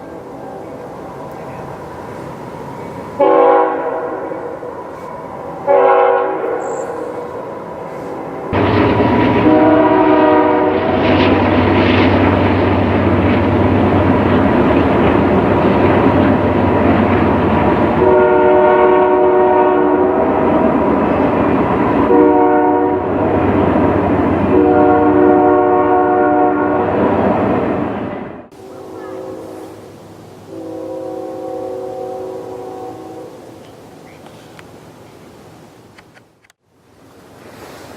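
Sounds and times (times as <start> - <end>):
train wheel and rail noise: 0.0 - 37.9
locomotive horn chord: 3.2 - 5.0, 5.6 - 7.4, 8.0 - 11.1, 18.0 - 20.4, 22.1 - 23.2, 24.5 - 27.0, 28.5 - 29.8, 30.5 - 33.4.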